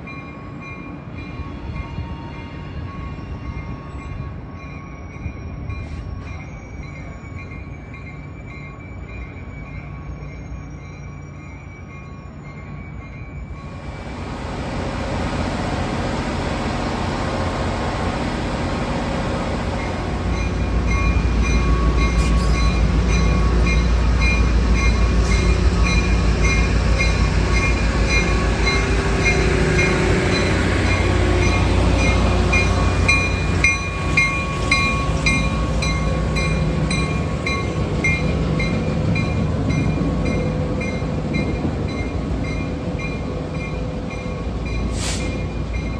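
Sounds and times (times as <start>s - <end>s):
train rumbling past: 0.0s - 45.9s
regular clicking of train wheels: 10.9s - 45.9s.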